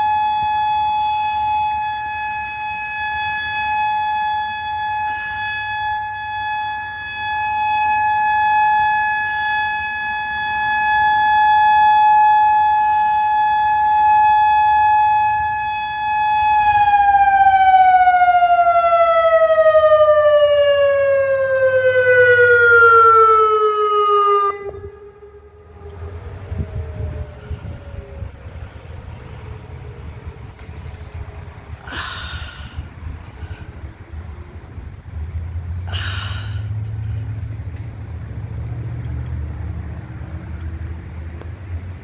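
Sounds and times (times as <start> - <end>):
warning siren alert tone: 0.0 - 30.5
siren winding down: 0.0 - 30.6.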